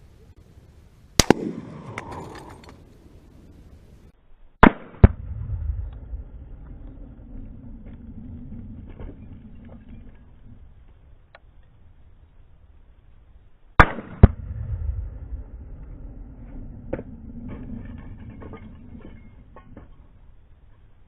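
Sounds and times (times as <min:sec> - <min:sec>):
gunshots with echo: 0:01.2 - 0:02.5.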